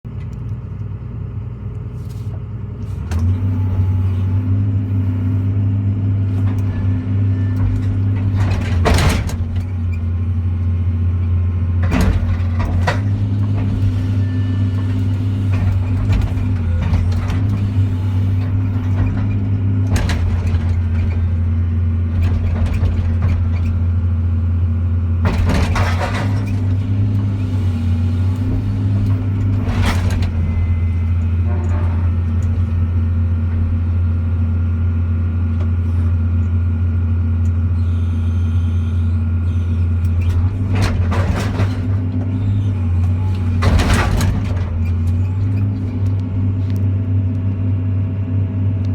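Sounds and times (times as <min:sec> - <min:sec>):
excavator diesel engine running: 0:00.0 - 0:48.9
loud metal crashes: 0:43.2 - 0:45.6.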